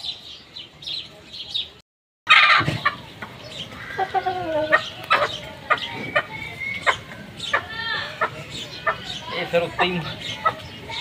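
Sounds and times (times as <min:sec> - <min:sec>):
chickens clucking: 0:02.3 - 0:11.0.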